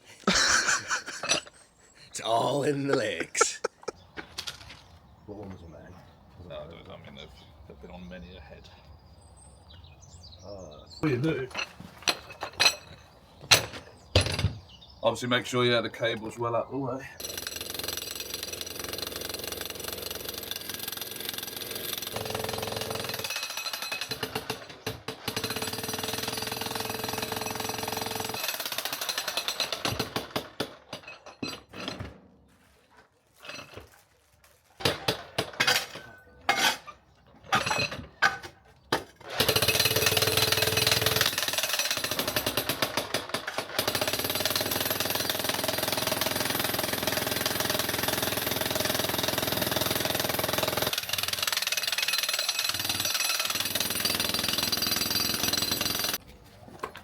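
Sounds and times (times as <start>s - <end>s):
concrete breaker hammering: 39.4s - 56.2s.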